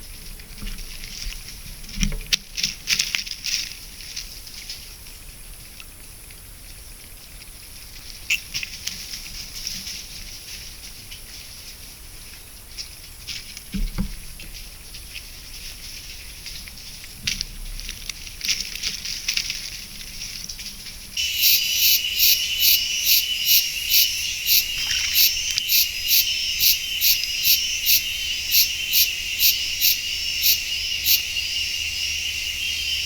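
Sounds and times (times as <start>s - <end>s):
rustling in dry leaf litter: 0.1s - 31.9s
faint steady high hiss: 20.8s - 33.0s.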